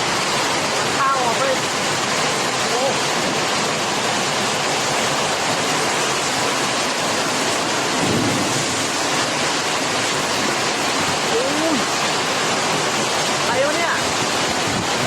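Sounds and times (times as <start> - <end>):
heavy rain pouring: 0.0 - 15.0.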